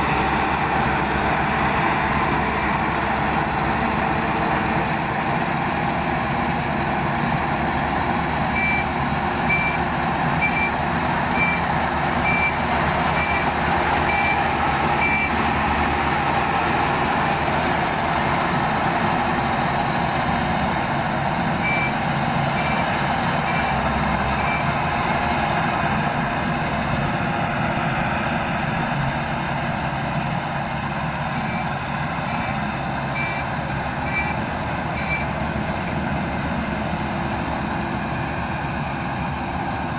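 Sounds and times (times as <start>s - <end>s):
combine harvester engine drone: 0.0s - 39.9s
reversing alarm beeping: 8.5s - 15.4s, 21.5s - 24.9s, 31.4s - 35.5s.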